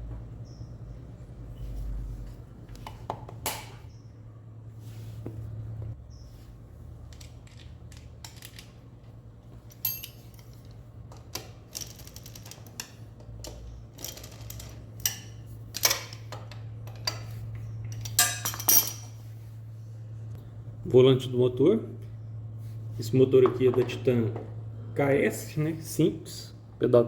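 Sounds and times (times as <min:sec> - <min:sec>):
steady low hum: 0:00.0 - 0:27.0
metal tools clinking: 0:09.6 - 0:19.2.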